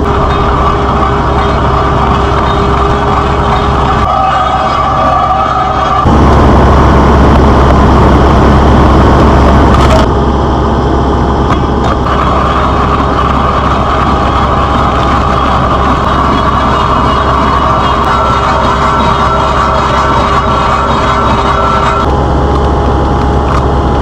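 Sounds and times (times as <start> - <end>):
stump grinder grinding wood: 0.0 - 7.5, 11.5 - 22.0
diesel engine running under load: 0.0 - 24.0.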